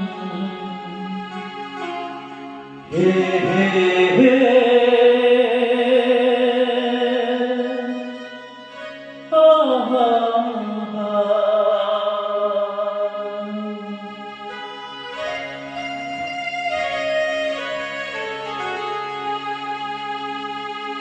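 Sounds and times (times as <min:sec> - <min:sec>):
person singing long notes: 0:00.0 - 0:02.0, 0:02.9 - 0:08.4, 0:09.3 - 0:14.4
steady musical accompaniment: 0:00.0 - 0:21.0.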